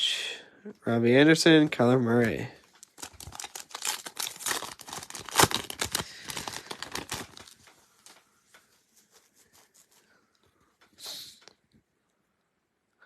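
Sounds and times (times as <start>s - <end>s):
cards and wrapper crinkling: 1.7s - 10.2s.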